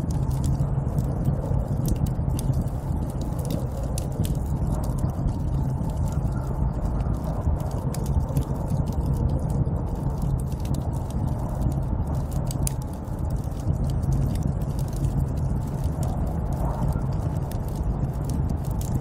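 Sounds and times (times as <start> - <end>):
low rushing wind: 0.0 - 19.0
small sharp crackles and clicks: 0.0 - 19.0.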